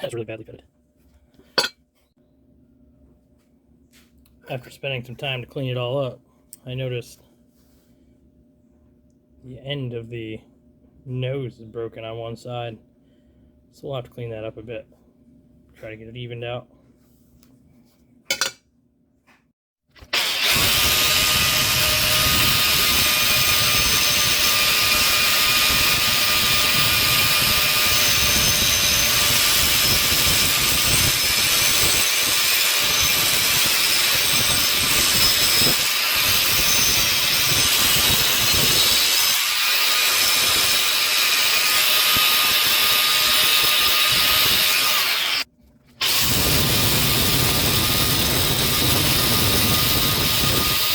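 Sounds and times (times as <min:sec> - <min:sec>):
power tool grinding steel: 0:20.1 - 0:50.9.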